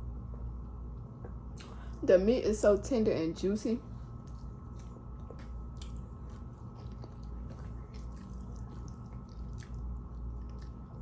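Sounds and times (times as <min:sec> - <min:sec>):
steady low hum: 0:00.0 - 0:11.0
person chewing food: 0:04.1 - 0:11.0.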